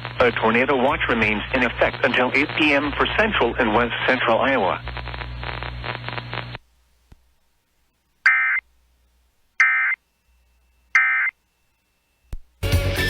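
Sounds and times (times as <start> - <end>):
music: 12.6 - 13.0.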